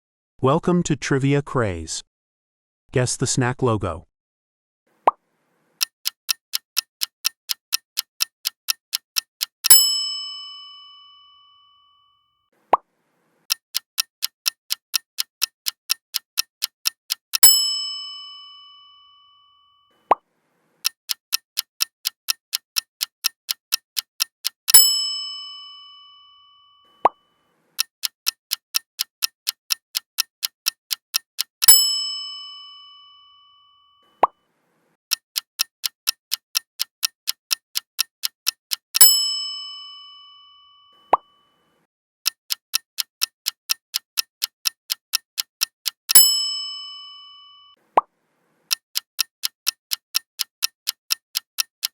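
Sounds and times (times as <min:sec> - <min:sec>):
clock ticking fast: 0:05.8 - 0:10.0, 0:13.4 - 0:17.8, 0:20.8 - 0:25.2, 0:27.7 - 0:32.2, 0:35.0 - 0:39.4, 0:42.2 - 0:46.5, 0:48.6 - 0:51.9
bell ding: 0:09.7 - 0:12.2, 0:17.4 - 0:19.9, 0:31.7 - 0:34.0, 0:46.2 - 0:47.8.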